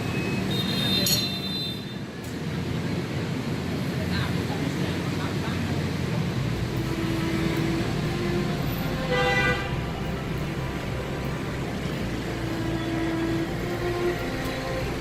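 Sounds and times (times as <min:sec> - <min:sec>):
horn honk: 0:06.8 - 0:15.0.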